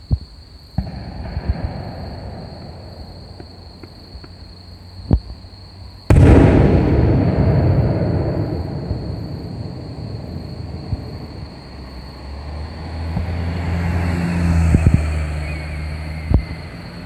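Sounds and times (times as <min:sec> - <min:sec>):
loud firework bang: 0:00.8 - 0:04.1, 0:06.1 - 0:12.0
fireworks booming and crackling: 0:00.8 - 0:17.0.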